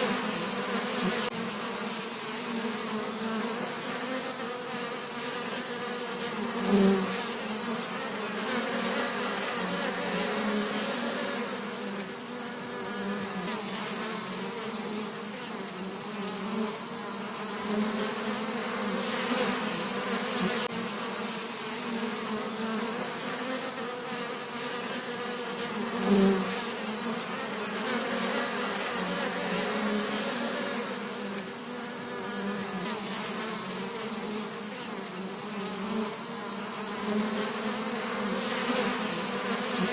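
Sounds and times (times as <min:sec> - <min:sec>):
bees buzzing: 0:00.0 - 0:39.9.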